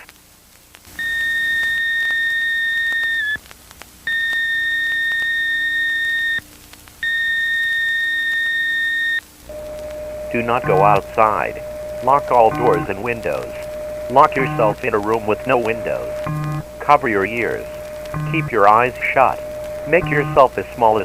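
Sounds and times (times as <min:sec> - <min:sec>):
high-pitched alert beeps: 0:10.3 - 0:20.6.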